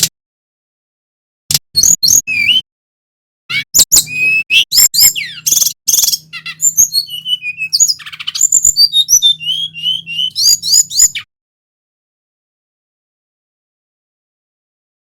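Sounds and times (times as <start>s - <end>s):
bird singing whistles and trills: 1.8s - 2.6s, 3.5s - 11.3s.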